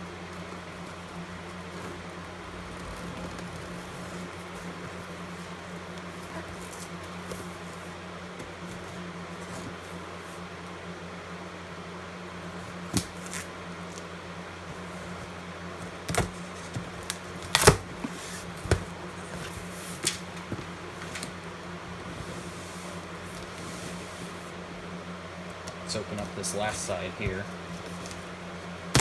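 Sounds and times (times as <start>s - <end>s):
steady low hum: 0.0s - 29.0s
cardboard box knocks and clicks: 15.9s - 21.4s.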